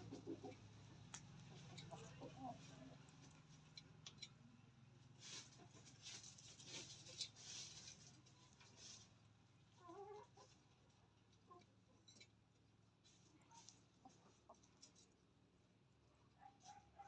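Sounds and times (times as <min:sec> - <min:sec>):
chicken clucking: 0:00.0 - 0:04.2, 0:05.2 - 0:15.3
scratching and rustling: 0:05.1 - 0:11.0, 0:13.0 - 0:15.3.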